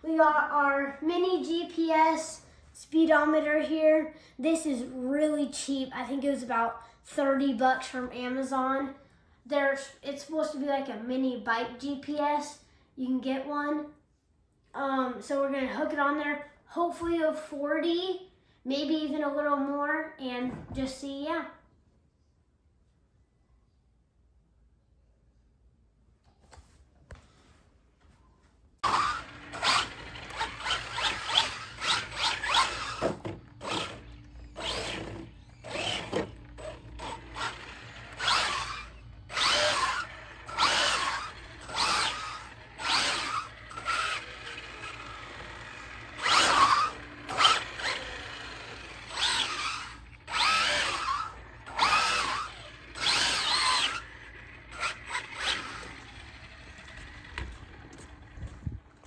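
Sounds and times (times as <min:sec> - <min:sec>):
electric motor whining: 0:28.8 - 0:59.0.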